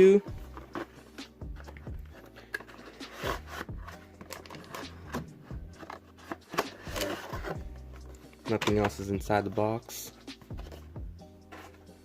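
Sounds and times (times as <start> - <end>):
faint background music: 0.0 - 12.0
cardboard rubbing and scraping: 0.4 - 7.6.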